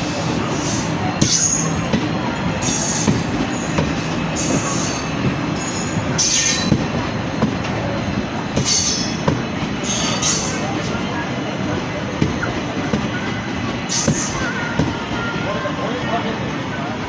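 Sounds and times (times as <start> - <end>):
train rumbling on rails: 0.0 - 17.0
wheels squealing: 0.1 - 7.4.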